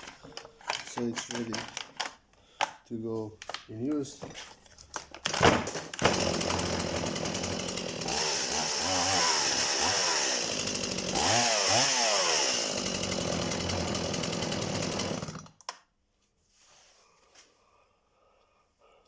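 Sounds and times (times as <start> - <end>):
chainsaw engine revving: 5.3 - 15.6.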